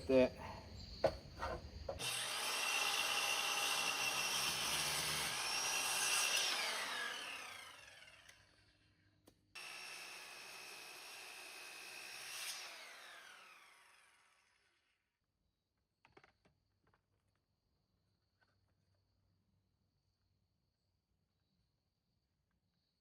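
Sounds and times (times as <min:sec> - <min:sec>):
electric saw cutting wood: 0:01.0 - 0:08.8, 0:09.6 - 0:14.9.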